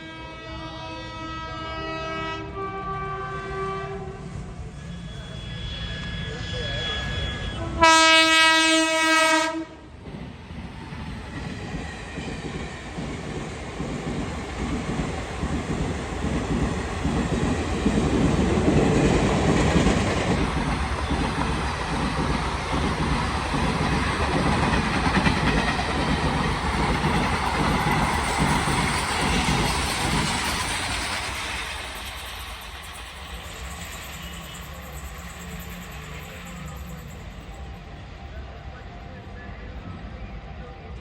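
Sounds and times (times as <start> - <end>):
train horn blast: 0.0 - 9.9
train wheels clattering over rails: 10.0 - 36.9.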